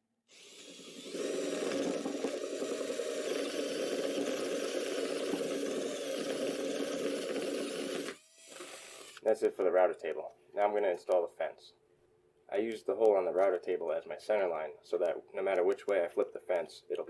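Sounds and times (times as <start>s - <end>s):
power tool cutting plywood: 0.3s - 9.2s.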